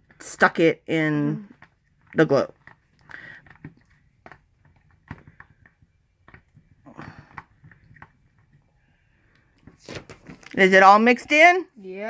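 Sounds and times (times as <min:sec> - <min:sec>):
spoon stirring thick glue: 0:00.0 - 0:11.4.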